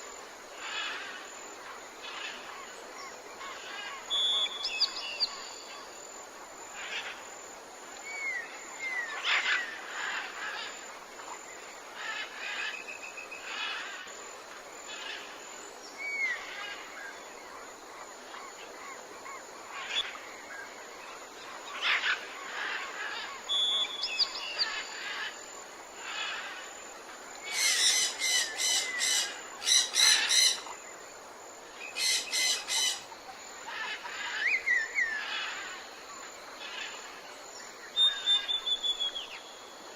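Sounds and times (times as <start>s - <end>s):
rapid harsh bird calls: 27.5s - 30.7s, 32.0s - 33.1s.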